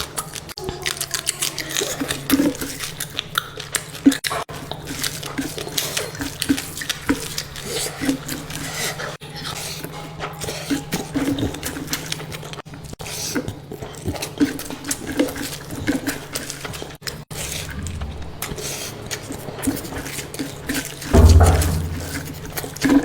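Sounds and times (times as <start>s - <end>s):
low thump: 17.4s - 18.8s, 21.2s - 23.0s
steady low hum: 17.4s - 19.5s.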